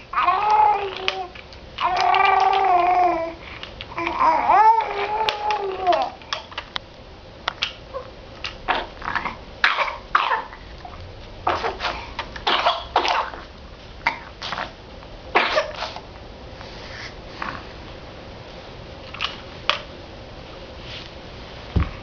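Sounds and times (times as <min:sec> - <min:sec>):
baby gurgling: 0:00.1 - 0:06.2
baby coughing: 0:08.7 - 0:10.6, 0:11.5 - 0:13.4, 0:14.0 - 0:14.6, 0:15.4 - 0:16.0.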